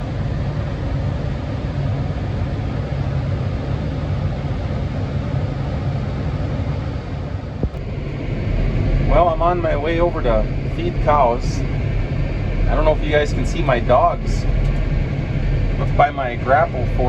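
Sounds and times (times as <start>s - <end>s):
tractor engine running: 7.6s - 17.0s.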